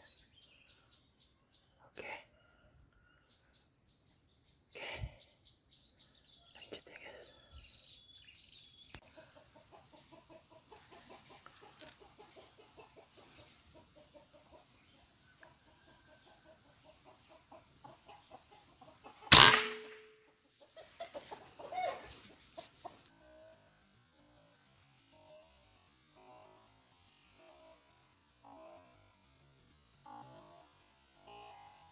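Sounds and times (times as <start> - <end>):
high insect drone: 0.0 - 31.9
air rifle shot: 19.3 - 20.1
fowl-like clucking: 20.6 - 23.0.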